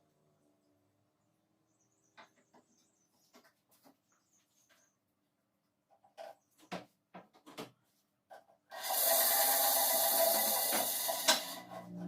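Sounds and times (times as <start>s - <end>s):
bandsaw running: 8.7s - 12.0s.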